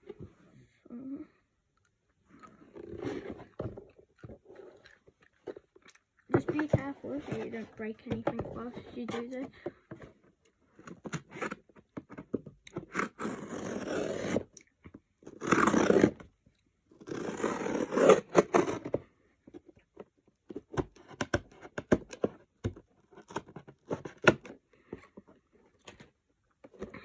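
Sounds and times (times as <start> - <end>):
cardboard being cut: 12.8 - 14.5, 15.3 - 16.2, 17.0 - 19.0.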